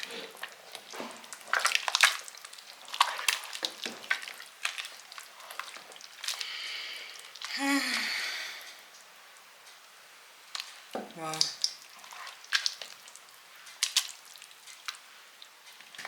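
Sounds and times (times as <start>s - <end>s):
spoon stirring and scraping a pot: 0.0s - 6.5s, 10.6s - 13.2s.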